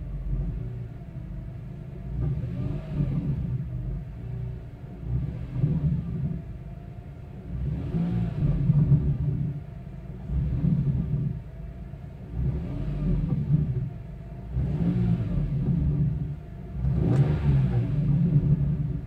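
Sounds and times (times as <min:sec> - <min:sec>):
car engine revving: 0:12.3 - 0:19.0
grinding rattle in exhaust: 0:12.4 - 0:19.0.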